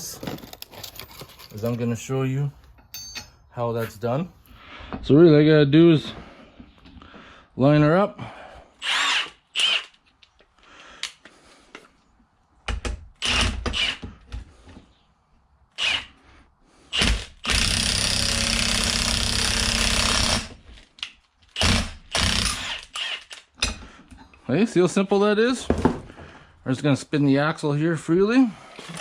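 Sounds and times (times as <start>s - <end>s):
power tool driving a screw: 8.8s - 10.0s, 13.2s - 14.1s, 15.8s - 16.2s, 16.9s - 20.6s, 21.5s - 23.5s, 28.8s - 29.0s.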